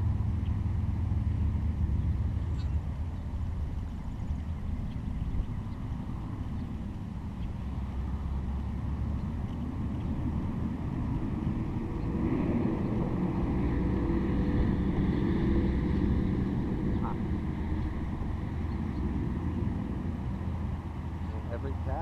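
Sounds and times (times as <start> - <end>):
distant vehicle engine drone: 0.0 - 22.0.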